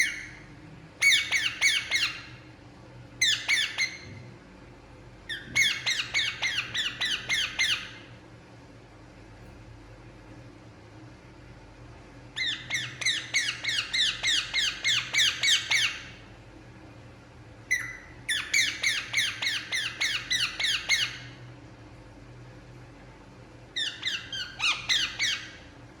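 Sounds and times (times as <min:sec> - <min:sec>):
parakeet calling: 0:00.0 - 0:02.5, 0:03.2 - 0:04.2, 0:05.3 - 0:08.1, 0:12.4 - 0:16.2, 0:17.7 - 0:21.4, 0:23.8 - 0:25.7.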